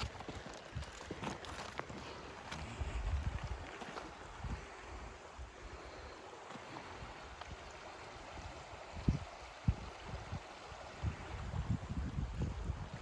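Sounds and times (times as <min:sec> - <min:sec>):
small stream flowing: 0:00.0 - 0:13.0.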